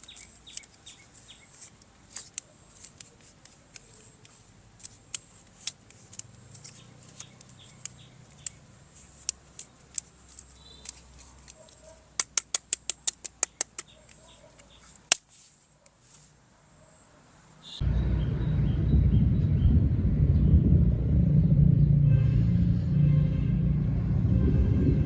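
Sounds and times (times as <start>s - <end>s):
plastic toy parts clicking: 0.0s - 15.3s.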